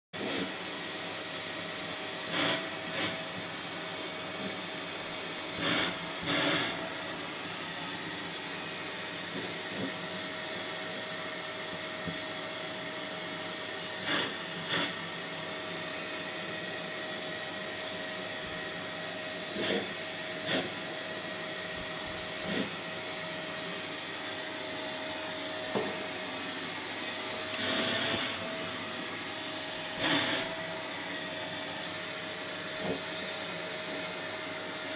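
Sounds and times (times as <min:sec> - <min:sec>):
vacuum cleaner whining: 0:00.1 - 0:34.9.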